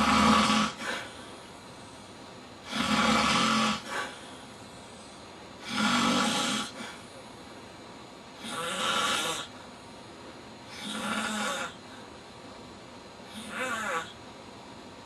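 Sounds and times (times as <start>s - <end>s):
man snoring: 0.0s - 1.1s, 2.6s - 4.2s, 5.6s - 7.0s, 8.4s - 9.6s, 10.7s - 11.8s, 13.3s - 14.2s.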